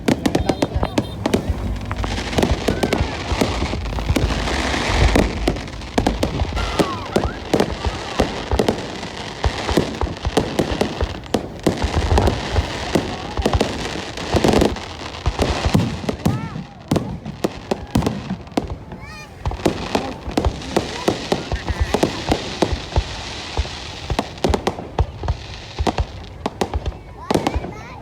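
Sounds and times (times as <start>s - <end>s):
low rumble: 0.0s - 12.0s
fireworks bangs and crackles: 0.0s - 28.0s.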